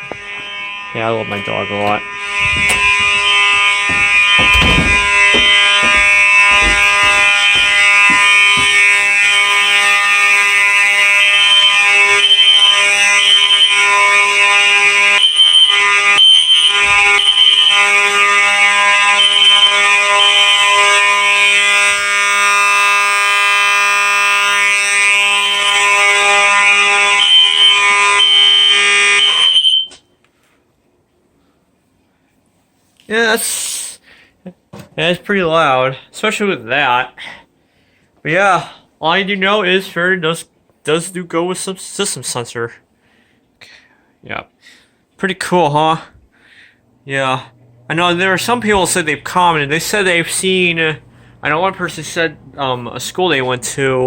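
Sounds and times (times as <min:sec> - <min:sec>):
fire alarm horn tone: 0:00.0 - 0:30.1, 0:47.3 - 0:54.0.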